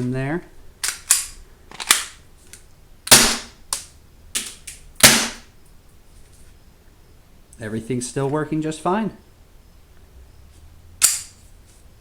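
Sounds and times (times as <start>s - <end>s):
airsoft pistol shots: 3.1s - 3.6s, 5.0s - 5.5s.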